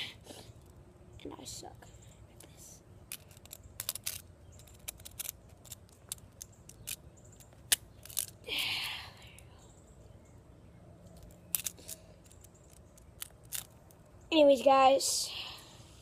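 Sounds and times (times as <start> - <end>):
fidget spinner clicking: 3.1 - 8.4, 11.1 - 14.0.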